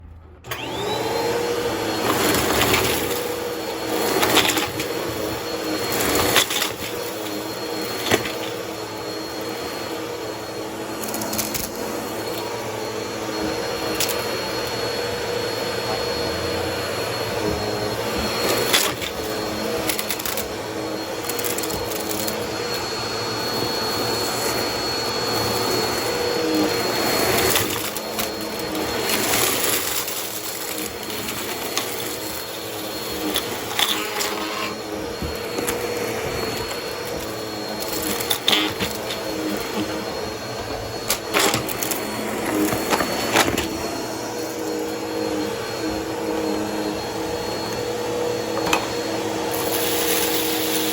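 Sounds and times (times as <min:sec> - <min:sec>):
vacuum cleaner whining: 0:00.0 - 0:50.9.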